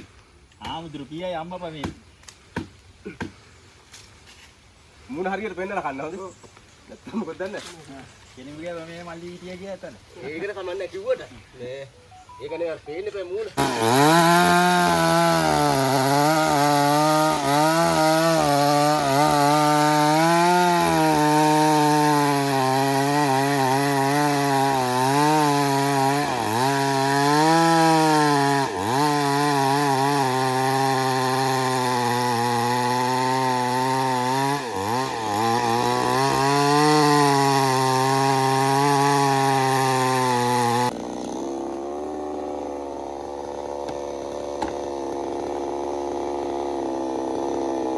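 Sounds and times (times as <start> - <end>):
chainsaw cutting wood: 13.5 - 47.9.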